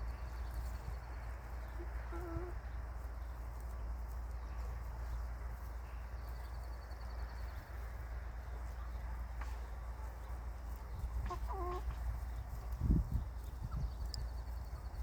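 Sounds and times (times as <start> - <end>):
chickens shuffling and pecking: 0.0 - 15.0
chicken clucking: 0.2 - 5.3, 8.6 - 15.0.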